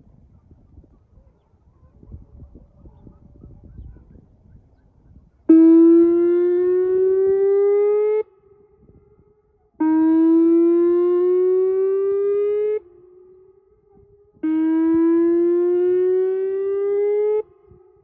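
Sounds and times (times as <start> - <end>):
siren echo off mountains: 1.2 - 18.0
warning siren rising tone: 5.5 - 8.3, 9.8 - 18.0.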